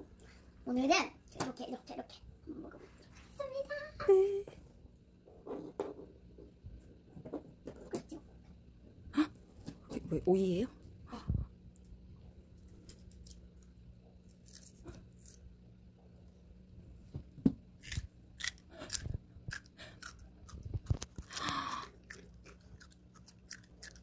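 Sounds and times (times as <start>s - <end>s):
child chewing crisp cucumber: 12.8s - 15.5s, 17.8s - 24.0s.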